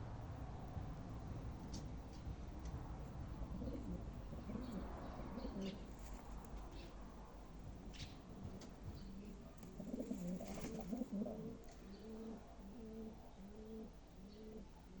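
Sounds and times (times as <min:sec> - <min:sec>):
pigeons cooing: 0:03.5 - 0:06.2, 0:09.0 - 0:15.0.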